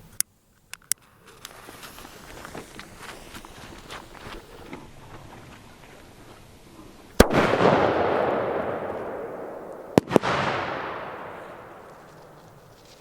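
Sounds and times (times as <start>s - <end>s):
crackly rushing firework tail: 1.0s - 13.0s
fireworks bangs: 7.2s - 13.0s.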